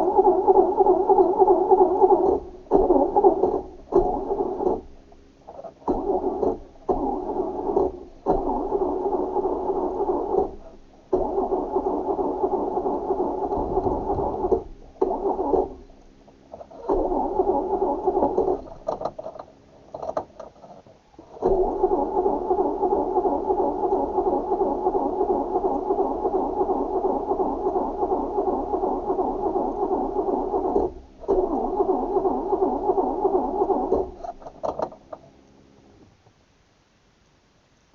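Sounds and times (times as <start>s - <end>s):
starter motor cranking engine: 0.0s - 35.2s
clicks: 5.5s - 24.4s.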